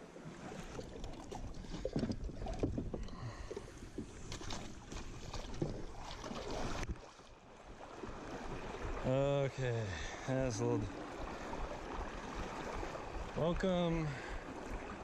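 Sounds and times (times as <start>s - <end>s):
paddle splashes: 0.0s - 15.0s
wind rumbling on microphone: 0.4s - 7.0s, 10.8s - 15.0s.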